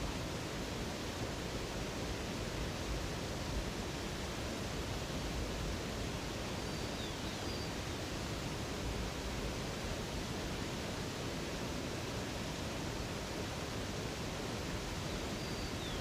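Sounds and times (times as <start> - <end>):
faint bird chirping: 6.6 - 7.8, 15.2 - 16.0.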